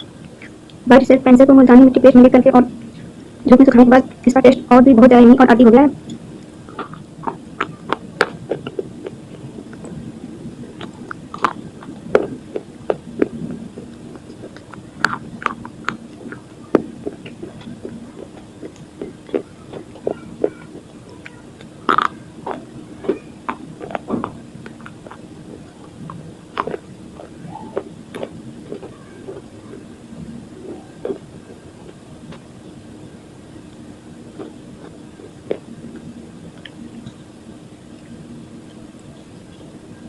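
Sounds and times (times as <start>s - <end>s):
slate pencils crunching when chewed: 6.7s - 10.0s, 10.6s - 30.0s, 30.6s - 32.4s, 34.3s - 36.0s.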